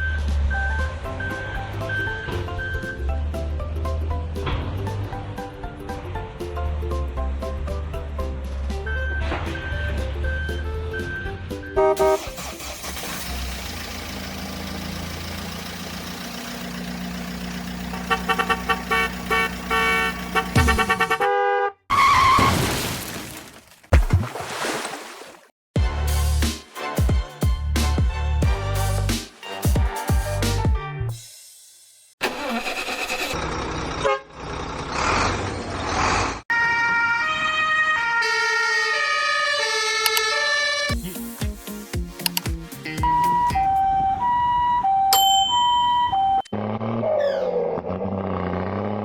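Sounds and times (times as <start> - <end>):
truck engine running: 11.8 - 21.3
short horn toots: 17.9 - 21.8.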